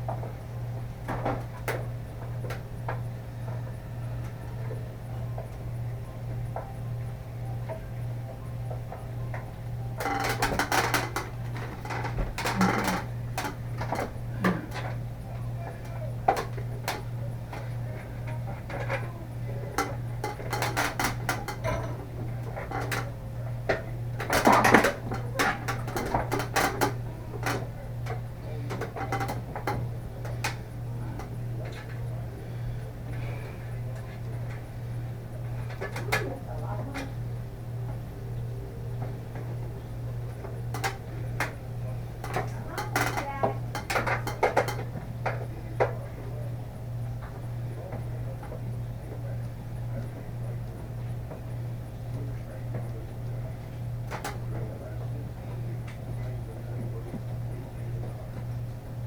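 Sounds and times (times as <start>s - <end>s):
steady low hum: 0.0s - 59.0s.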